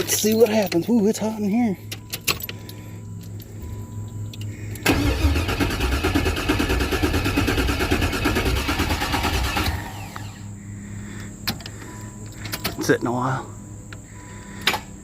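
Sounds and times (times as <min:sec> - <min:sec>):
engine starter cranking: 0:04.8 - 0:10.5.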